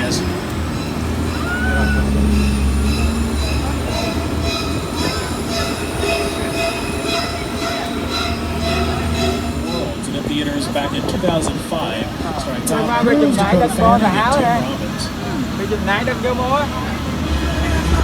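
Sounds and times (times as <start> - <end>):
high squealing tones: 0.0 - 10.2
tram rumbling: 0.0 - 18.0.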